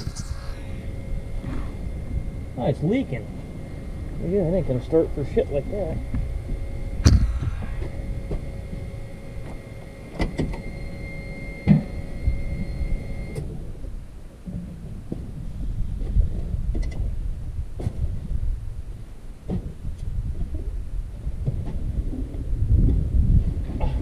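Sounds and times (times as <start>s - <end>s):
low rumble: 0.0s - 10.1s
electric fuel pump whining: 0.0s - 13.9s
sharp knocks and clunks: 7.0s - 8.4s.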